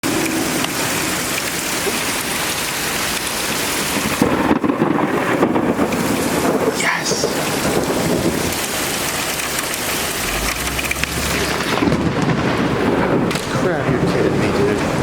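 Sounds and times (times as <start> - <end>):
heavy rain pouring: 0.0 - 15.0
thunder rumbling: 0.0 - 15.0.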